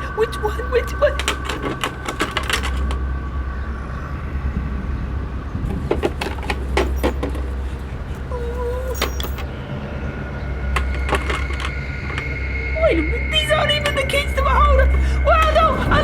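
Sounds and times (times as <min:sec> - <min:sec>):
low rumble: 0:00.0 - 0:16.0
keys jangling: 0:01.1 - 0:03.1, 0:05.8 - 0:09.6, 0:10.7 - 0:12.4
keys clicking in door lock: 0:01.2 - 0:03.0, 0:08.9 - 0:09.5, 0:10.8 - 0:12.4.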